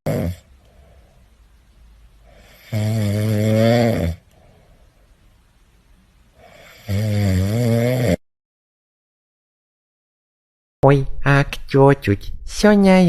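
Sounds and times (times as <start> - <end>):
cat snoring: 0.1 - 0.5, 2.3 - 4.2, 6.4 - 8.2.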